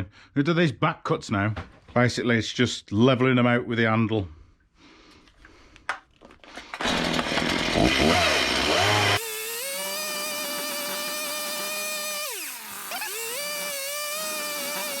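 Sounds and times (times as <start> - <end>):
chainsaw cutting wood: 6.5 - 15.0.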